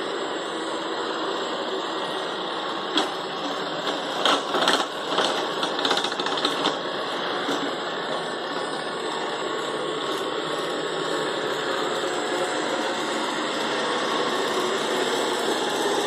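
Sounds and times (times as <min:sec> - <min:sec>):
robot vacuum running: 0:00.0 - 0:16.0.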